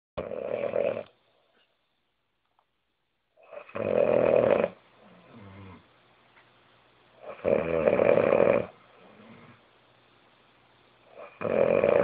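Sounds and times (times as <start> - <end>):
woman snoring loudly: 0.2 - 1.1, 3.5 - 4.8, 7.3 - 8.8, 11.2 - 12.0.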